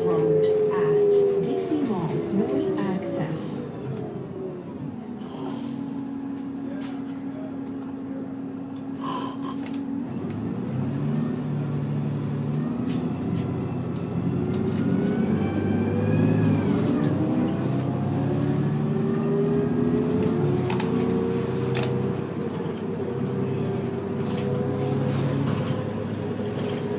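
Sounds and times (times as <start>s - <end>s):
bus engine accelerating: 0.0s - 26.9s.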